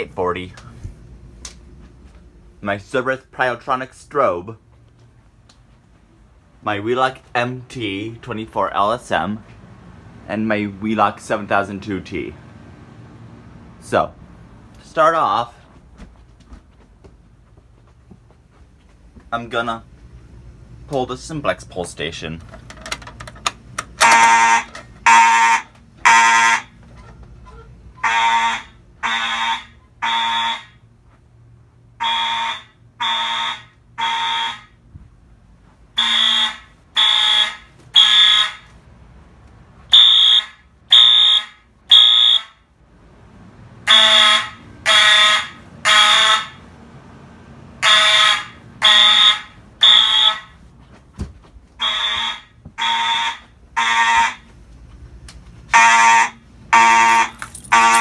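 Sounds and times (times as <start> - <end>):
fire alarm horns: 24.0 - 26.8, 27.5 - 31.0, 31.9 - 34.8, 36.0 - 38.8, 39.9 - 42.6, 43.8 - 46.7, 47.8 - 50.6, 51.8 - 54.6, 55.7 - 58.0.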